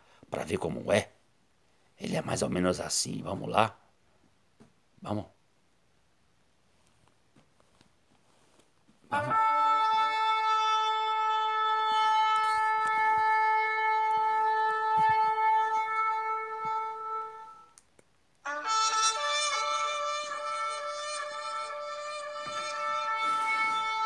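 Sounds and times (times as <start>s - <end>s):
shofar blast: 9.1s - 17.8s, 18.5s - 24.0s.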